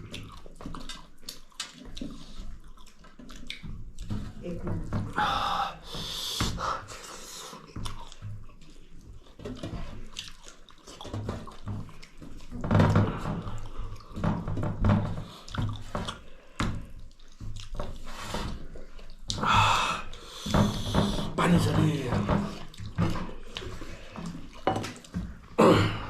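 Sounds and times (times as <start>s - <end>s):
chewing with lip smacks: 0.0s - 4.4s, 7.1s - 12.6s, 15.3s - 19.4s.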